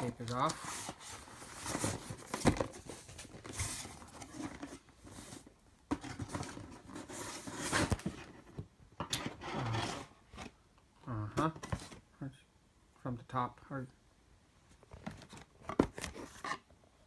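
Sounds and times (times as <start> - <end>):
cardboard packaging rustling: 0.0 - 8.6, 14.8 - 16.7.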